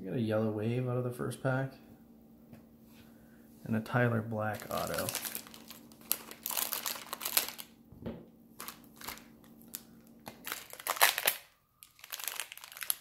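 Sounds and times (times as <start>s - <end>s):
cards and wrapper crinkling: 4.4s - 7.8s, 8.6s - 13.0s.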